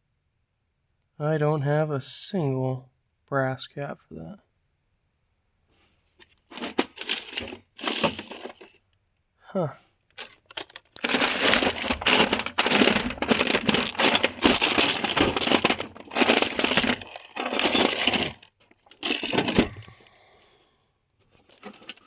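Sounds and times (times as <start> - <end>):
metal pipe fittings clinking: 10.2 - 19.8.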